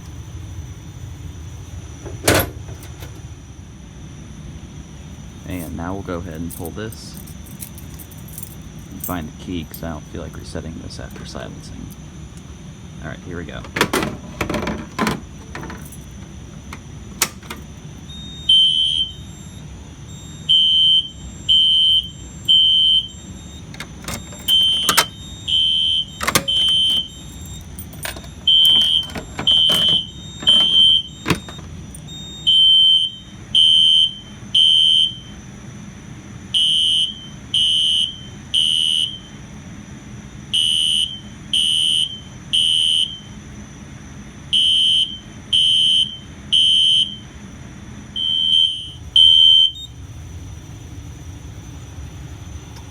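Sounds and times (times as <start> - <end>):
fire alarm horn beeping: 0.0 - 35.6, 36.4 - 39.6, 40.4 - 47.6, 48.2 - 52.7
pull station clacks: 13.6 - 17.7, 23.8 - 25.2, 26.2 - 31.7.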